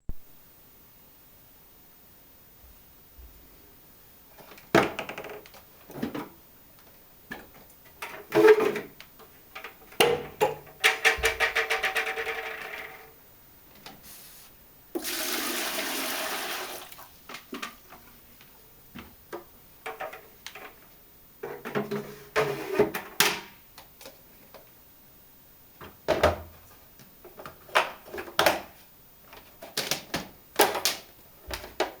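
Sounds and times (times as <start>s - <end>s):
clicks and knocks of vacuum parts: 4.4s - 13.1s, 17.3s - 24.7s, 25.8s - 32.0s.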